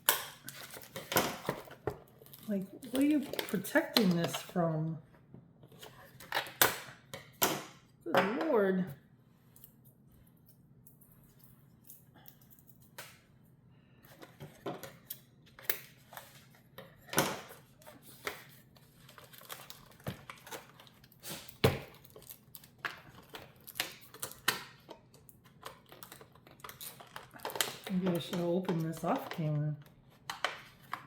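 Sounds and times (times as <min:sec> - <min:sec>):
plastic parts clicking and rattling: 0:00.0 - 0:04.6, 0:14.1 - 0:31.0.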